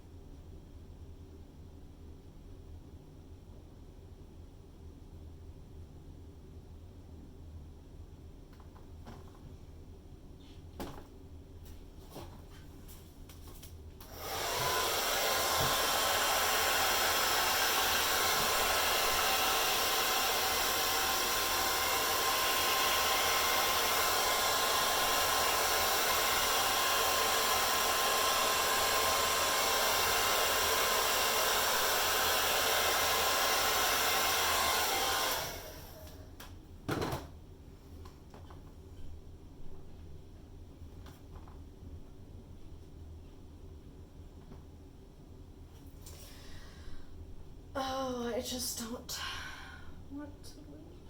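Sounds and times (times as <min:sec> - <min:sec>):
hair dryer blowing: 0:14.0 - 0:36.3.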